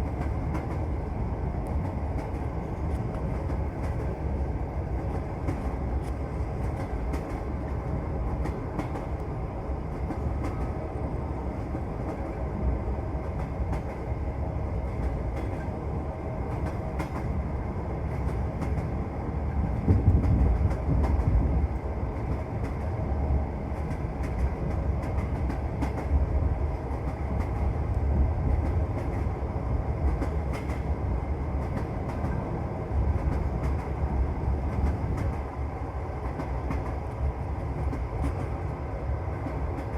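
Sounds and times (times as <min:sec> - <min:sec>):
light clicks of rails: 0:00.0 - 0:01.0, 0:01.6 - 0:23.1, 0:23.7 - 0:29.4, 0:30.0 - 0:39.9
train wheels rumbling on rails: 0:00.0 - 0:39.9.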